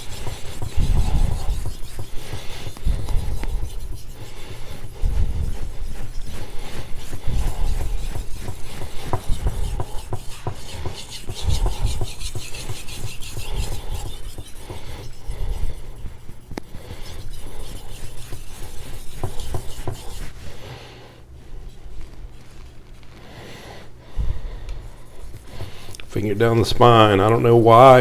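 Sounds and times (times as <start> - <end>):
knife scraping on sharpening stone: 5.5 - 16.2.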